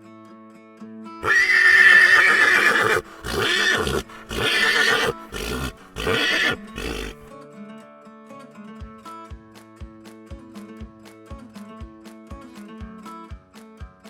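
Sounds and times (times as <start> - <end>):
horse whinnying: 1.2 - 7.3.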